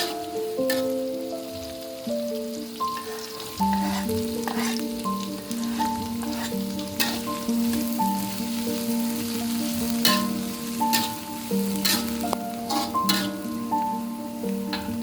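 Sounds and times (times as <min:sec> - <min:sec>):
spatula scraping pan: 0:00.0 - 0:00.9, 0:03.0 - 0:08.0, 0:09.9 - 0:14.0
food sizzling in hot oil: 0:00.0 - 0:15.0
instrumental music: 0:00.0 - 0:15.0.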